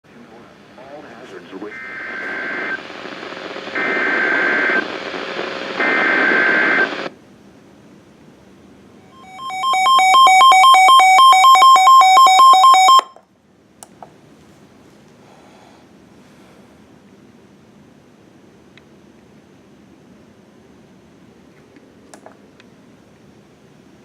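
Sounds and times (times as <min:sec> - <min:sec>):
radio hiss: 0:00.1 - 0:07.1
pulsing two-tone alert beep: 0:09.2 - 0:13.1.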